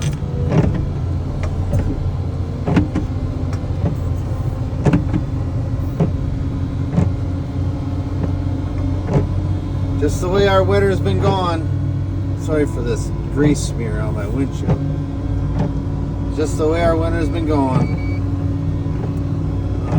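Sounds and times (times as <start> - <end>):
vehicle engine drone: 0.0 - 19.9.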